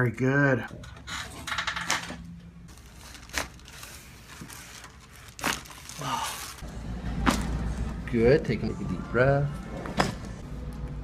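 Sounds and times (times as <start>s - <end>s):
paper and clothing rustling: 2.7s - 6.6s.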